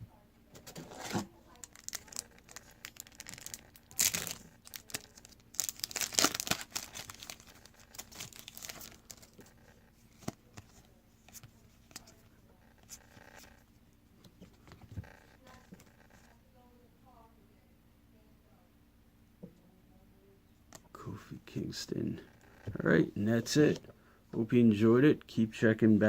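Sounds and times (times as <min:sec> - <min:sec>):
wrapper tearing and crinkling: 0:01.0 - 0:09.5.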